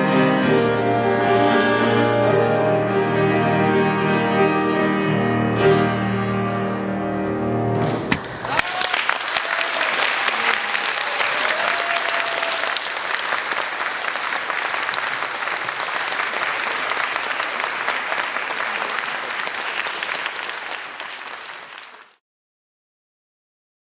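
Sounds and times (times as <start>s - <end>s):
audience applauding: 6.5s - 22.2s.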